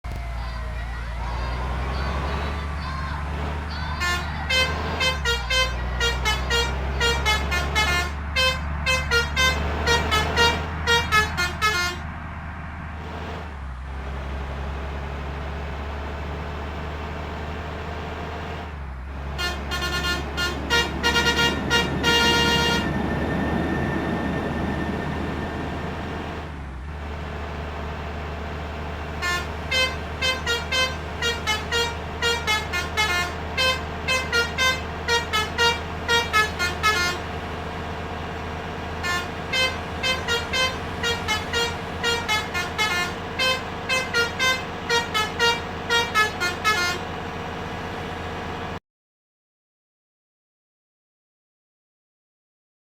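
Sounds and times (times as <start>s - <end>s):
bus engine drone: 0.0s - 48.8s
multi-tone musical air horn: 4.0s - 12.0s, 19.4s - 24.3s, 29.2s - 37.3s, 39.0s - 47.1s.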